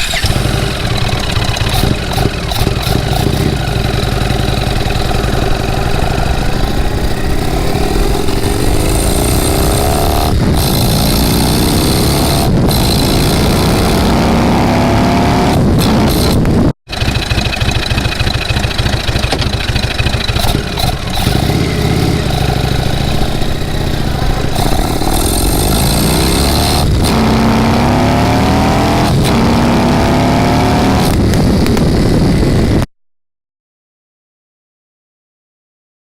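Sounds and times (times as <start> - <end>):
motorcycle engine accelerating: 0.0 - 32.9.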